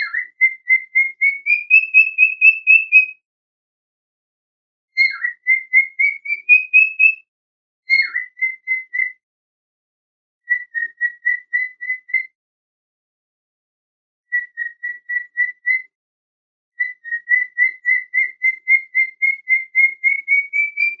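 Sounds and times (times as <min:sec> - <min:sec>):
cockatiel chirping: 0:00.0 - 0:03.1, 0:05.0 - 0:07.2, 0:07.9 - 0:09.1, 0:10.5 - 0:12.3, 0:14.4 - 0:15.9, 0:16.8 - 0:21.0.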